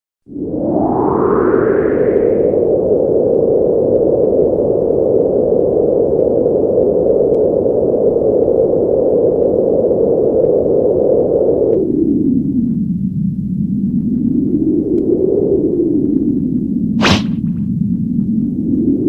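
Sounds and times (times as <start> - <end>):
loud muffled rushing noise: 17.0 - 17.7.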